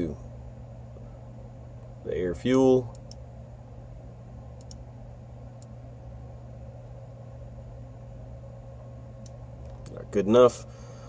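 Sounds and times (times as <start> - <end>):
steady low hum: 0.0 - 11.0
faint clicks: 4.6 - 4.8.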